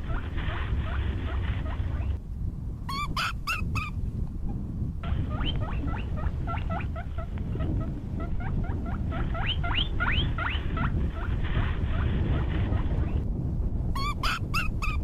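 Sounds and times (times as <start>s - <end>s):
steady low rumble: 0.0s - 15.0s
small animal squeaking: 2.9s - 4.0s, 5.0s - 11.3s, 14.0s - 15.0s.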